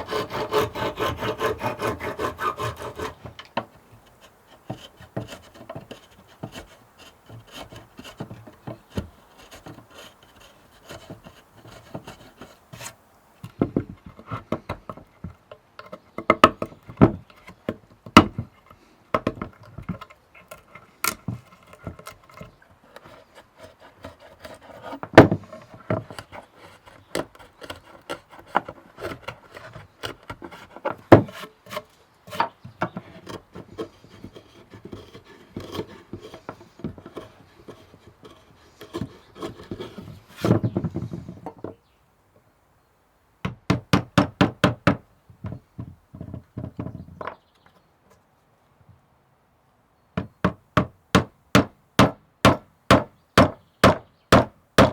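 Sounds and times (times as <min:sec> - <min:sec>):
hand tools scraping wood: 0:00.0 - 0:15.1, 0:20.0 - 0:41.5, 0:50.8 - 0:54.9.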